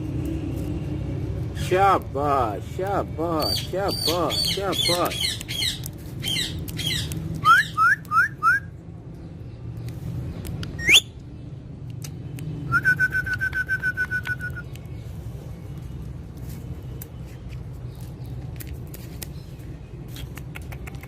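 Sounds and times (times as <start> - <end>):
parrot whistling and chirping: 3.4 - 8.7, 10.8 - 11.2, 12.7 - 14.8.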